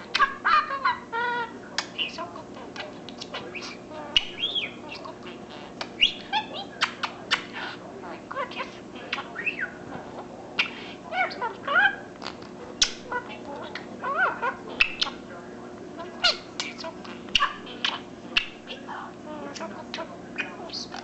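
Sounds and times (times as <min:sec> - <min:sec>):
budgerigar chattering: 0:00.0 - 0:09.9, 0:10.6 - 0:15.3, 0:16.0 - 0:21.0.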